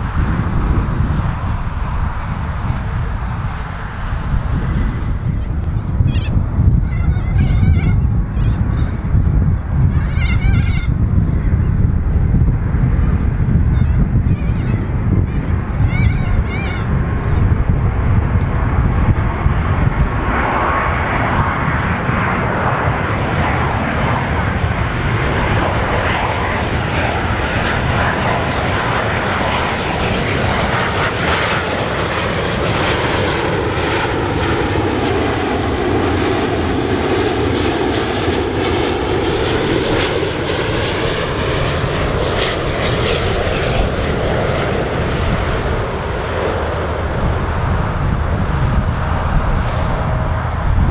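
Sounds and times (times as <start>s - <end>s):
airliner passing overhead: 0.0s - 50.9s.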